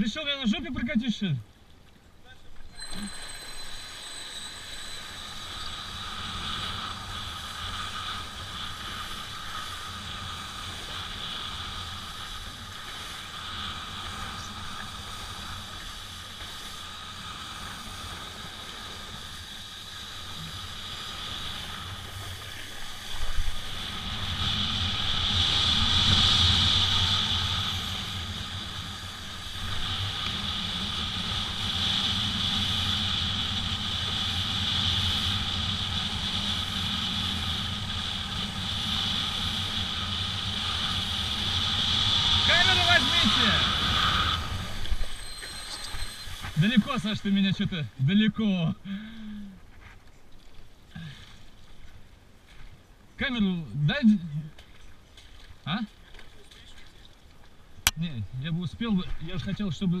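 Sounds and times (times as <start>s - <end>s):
water rushing: 0.0s - 47.6s.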